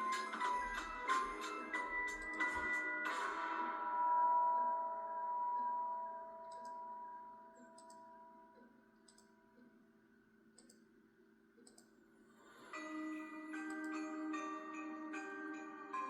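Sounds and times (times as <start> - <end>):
bell-like chime tones: 0.0 - 8.5, 12.6 - 16.0
faint sharp clicks: 11.6 - 12.0.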